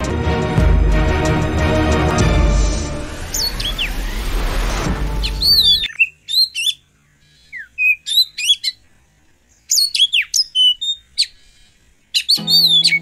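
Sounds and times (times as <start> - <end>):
background music: 0.0 - 5.9, 12.4 - 13.0
birds chirping and whistling: 2.6 - 8.8, 9.7 - 13.0.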